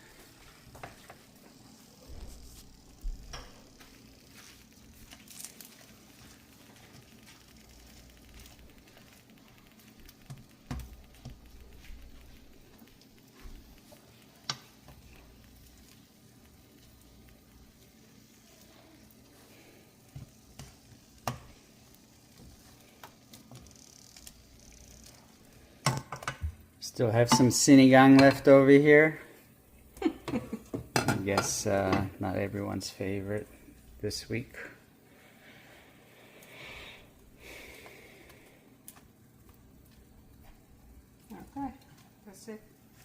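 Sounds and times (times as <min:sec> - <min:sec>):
food sizzling in oil: 0:00.0 - 0:34.7, 0:36.2 - 0:43.0
utensil knocking against pan: 0:27.3 - 0:27.6.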